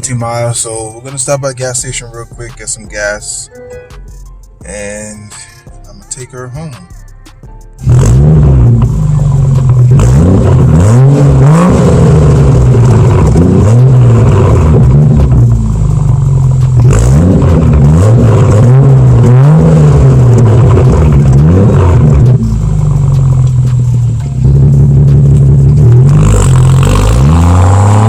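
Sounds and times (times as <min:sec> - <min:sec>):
car engine pulling through gears: 0:07.8 - 0:28.0.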